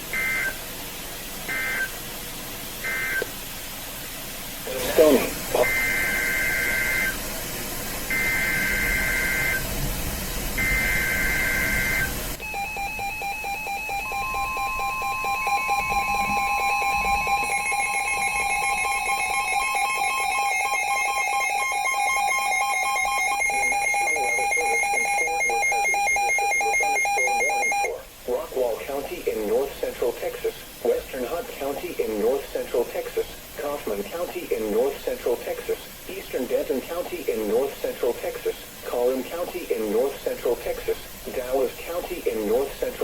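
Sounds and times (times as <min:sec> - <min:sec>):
steady attention tone: 0:04.7 - 0:07.2, 0:08.0 - 0:09.7, 0:10.6 - 0:28.0
digital data screech bursts: 0:10.6 - 0:27.9.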